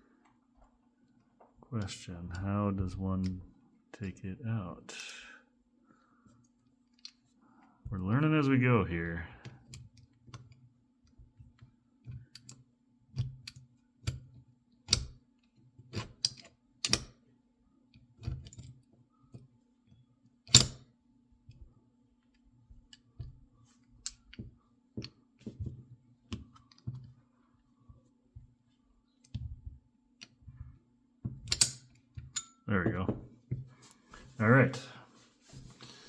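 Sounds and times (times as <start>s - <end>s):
metallic clicks of padlock: 16.2s - 17.1s, 31.5s - 32.5s.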